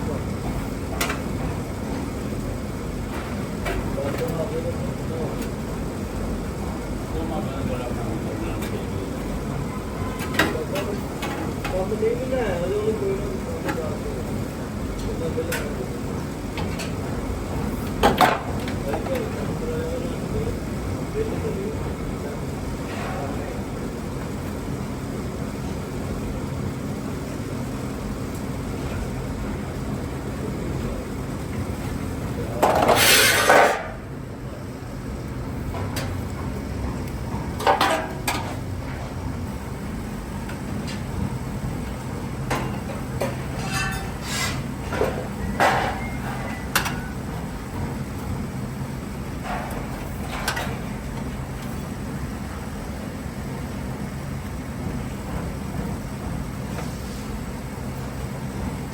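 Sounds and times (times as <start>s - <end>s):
low machine hum: 0.0s - 58.9s
metallic clanks of sheet steel: 32.6s - 34.0s, 42.6s - 47.1s.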